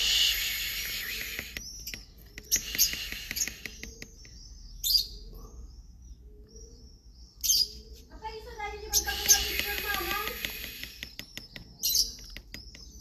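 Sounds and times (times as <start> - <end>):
young birds chirping: 0.0 - 13.0
rapid scratchy clicks: 9.0 - 13.0.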